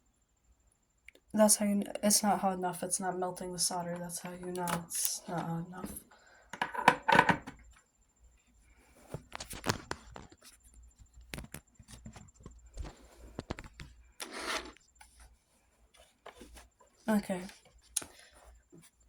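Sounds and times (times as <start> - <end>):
rasping scrape: 14.2 - 14.8.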